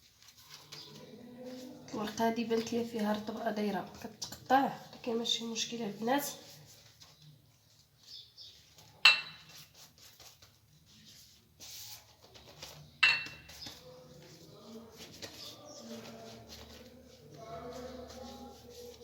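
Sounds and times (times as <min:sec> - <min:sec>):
faint handling noises: 0:00.0 - 0:19.0
metal utensil clinking on dish: 0:09.1 - 0:09.4.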